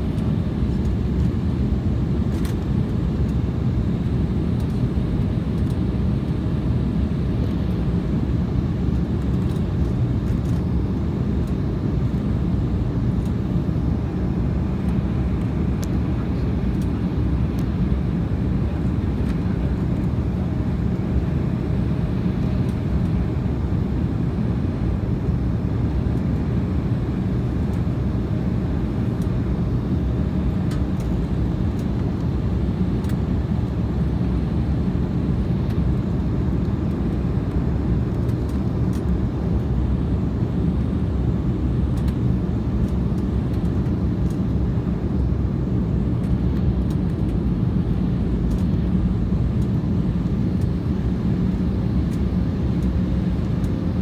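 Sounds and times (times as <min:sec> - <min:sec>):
airliner engines and airflow rumble: 0:00.0 - 0:54.0.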